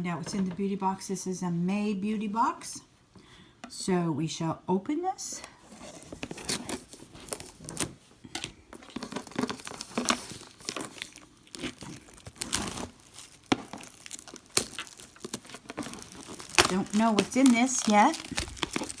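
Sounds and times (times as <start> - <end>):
packaging tearing and crinkling: 6.4 - 7.9, 9.1 - 19.0.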